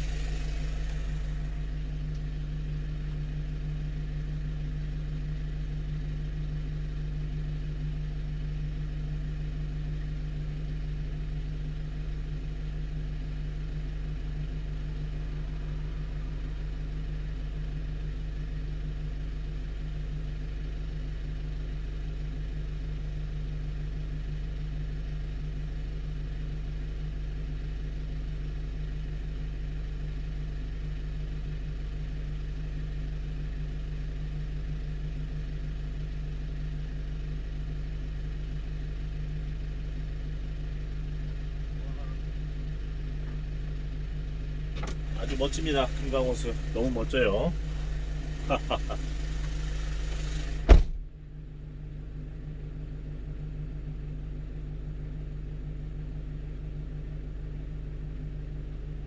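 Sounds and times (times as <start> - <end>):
truck engine idling: 0.0 - 3.2, 40.7 - 50.8.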